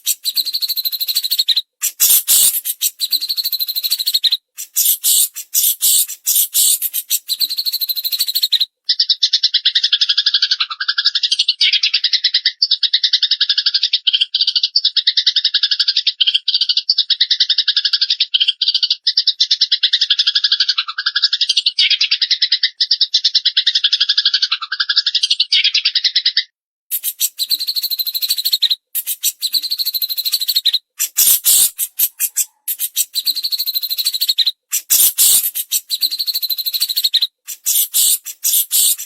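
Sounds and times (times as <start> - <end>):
songbird buzzy trill: 0.0 - 8.5, 26.9 - 39.0.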